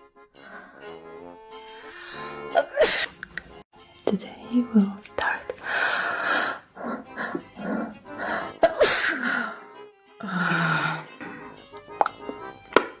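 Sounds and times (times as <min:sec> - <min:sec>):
background music: 0:00.0 - 0:13.0
person sneezing: 0:02.2 - 0:03.3, 0:08.6 - 0:09.2.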